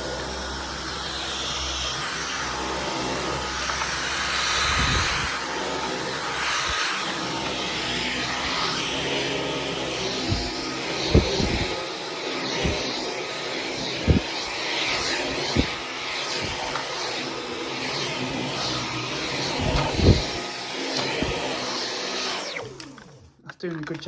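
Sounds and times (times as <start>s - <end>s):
vacuum cleaner running: 0.0s - 23.3s.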